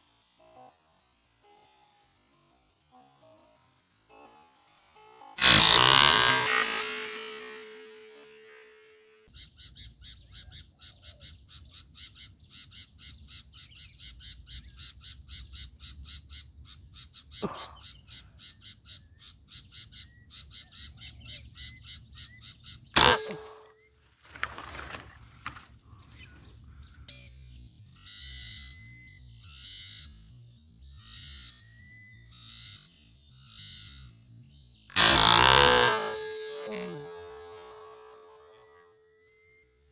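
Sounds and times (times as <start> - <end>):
sharp loud click: 5.4 - 8.7, 23.0 - 23.7, 35.0 - 37.8.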